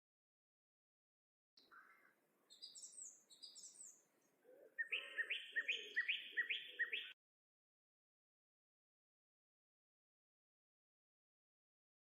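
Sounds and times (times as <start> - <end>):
songbird chirping: 1.6 - 7.2.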